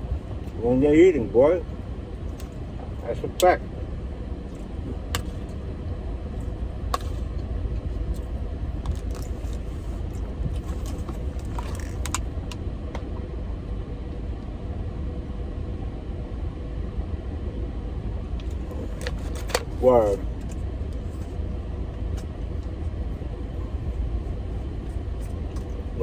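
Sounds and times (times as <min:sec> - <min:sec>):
car cabin rumble: 0:00.0 - 0:13.7, 0:18.2 - 0:26.0
clicks and handling noises of eating: 0:04.5 - 0:05.6, 0:06.4 - 0:13.1, 0:18.4 - 0:21.3, 0:23.9 - 0:26.0.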